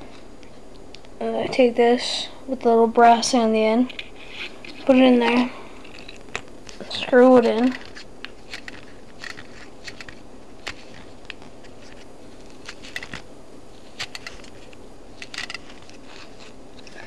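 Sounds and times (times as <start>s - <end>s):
small metal clicks and scrapes: 3.9s - 13.2s, 14.0s - 17.0s.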